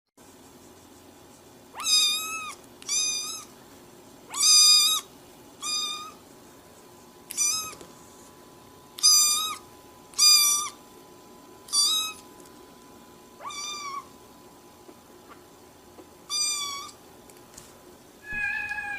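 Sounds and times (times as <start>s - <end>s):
cat meowing: 13.4s - 14.1s, 18.2s - 18.9s.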